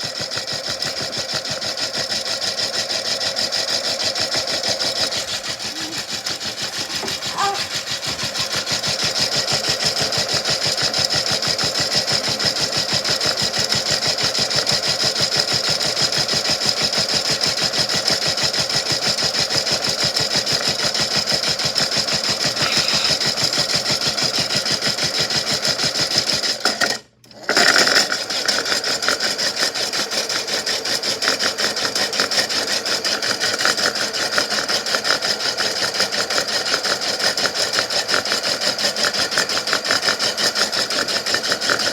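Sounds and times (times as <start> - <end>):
small electric motor whirring: 0.0 - 24.7.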